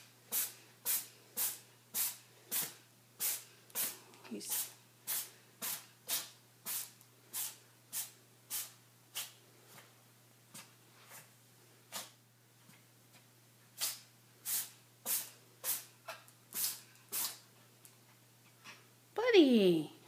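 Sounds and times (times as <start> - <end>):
cat sneezing: 13.8 - 17.4.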